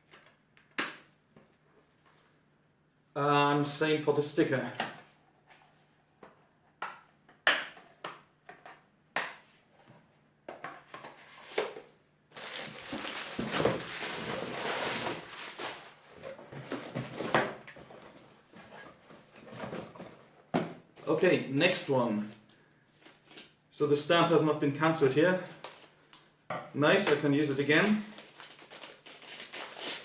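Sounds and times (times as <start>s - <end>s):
packaging rustling: 12.3s - 20.2s, 27.8s - 30.0s.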